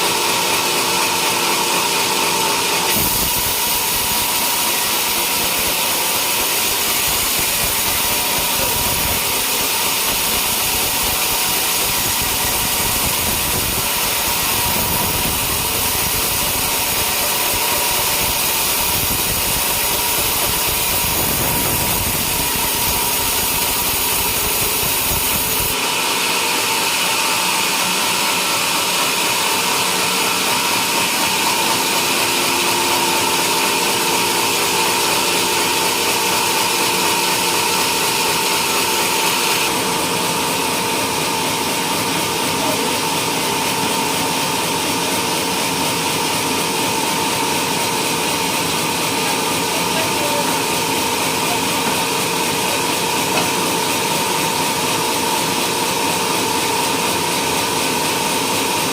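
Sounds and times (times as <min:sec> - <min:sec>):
sawmill sawing through log: 0:00.0 - 0:58.9.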